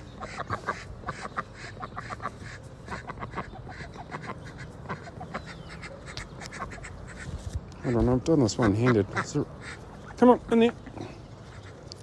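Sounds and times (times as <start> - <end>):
ducks quacking: 0.0 - 12.0.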